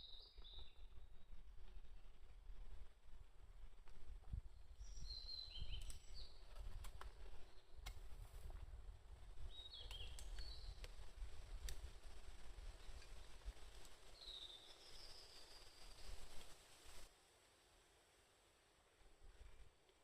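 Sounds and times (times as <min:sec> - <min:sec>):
faint bird chirps: 0:00.0 - 0:01.4, 0:04.5 - 0:08.0, 0:09.4 - 0:11.0, 0:14.1 - 0:16.4.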